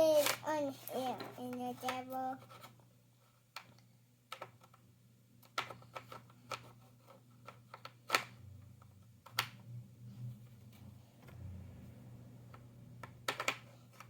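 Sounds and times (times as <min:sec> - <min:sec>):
puzzle pieces clicking on table: 0:13.2 - 0:14.0.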